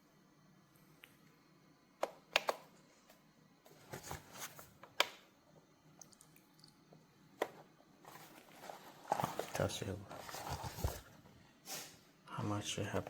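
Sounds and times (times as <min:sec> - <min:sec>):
soft rustling: 0:08.0 - 0:11.3.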